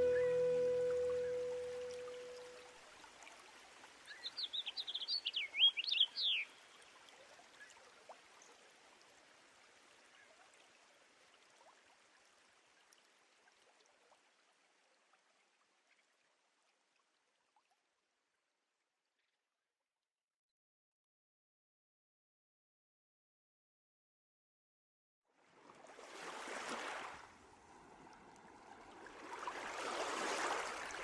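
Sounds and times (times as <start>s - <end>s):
bird chirping: 0.0s - 2.6s, 4.1s - 6.5s
faint rushing hiss: 0.0s - 2.7s.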